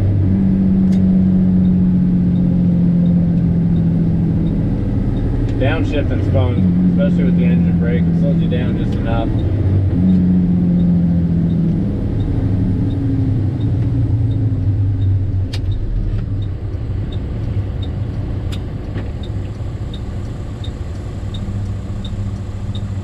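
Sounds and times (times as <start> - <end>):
diesel truck engine from cab: 0.0 - 23.0
faint regular ticking: 1.0 - 9.6, 10.7 - 23.0
sharp clicks: 13.6 - 22.9.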